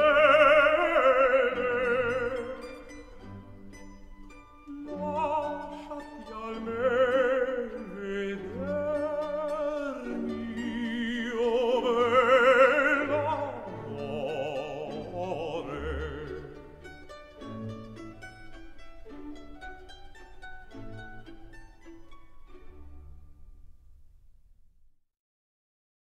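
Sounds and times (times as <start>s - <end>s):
operatic singing with orchestra: 0.0s - 3.4s, 4.3s - 17.6s.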